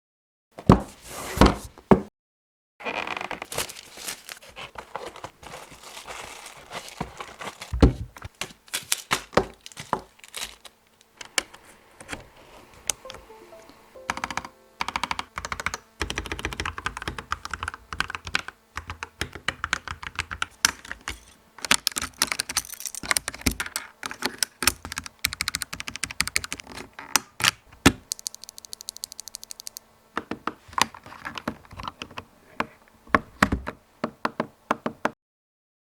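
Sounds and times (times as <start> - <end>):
mechanical keyboard key clacks: 28.0 - 29.8.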